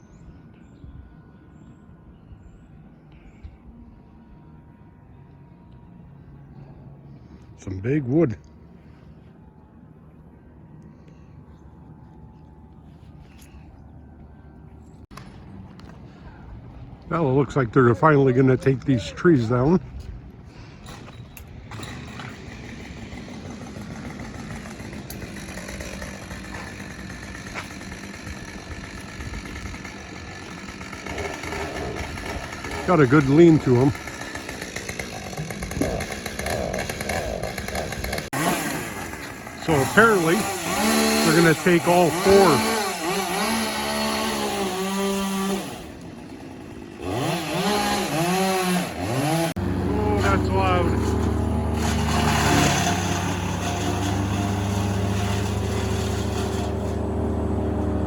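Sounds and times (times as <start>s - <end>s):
motor engine idling: 21.3s - 39.7s, 49.6s - 58.0s.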